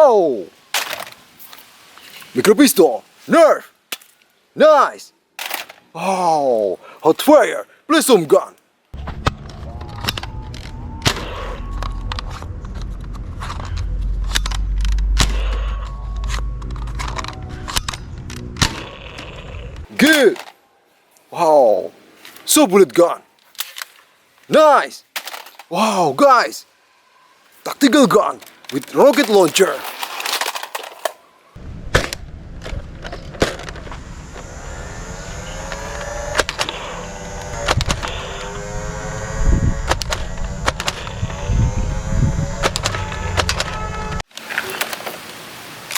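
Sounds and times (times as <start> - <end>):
low hum: 9.0 - 19.9, 31.6 - 44.2
low steady hum: 9.0 - 19.9
rising whirring whine: 9.0 - 19.9, 31.6 - 44.2
toy gun clicks: 39.8 - 41.2.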